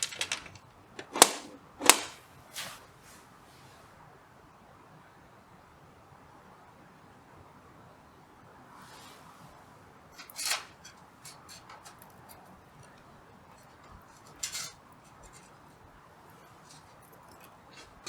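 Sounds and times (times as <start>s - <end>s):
small hard objects clicking: 0.0s - 2.2s
sharp clinks and scrapes: 10.2s - 12.5s, 13.5s - 18.0s.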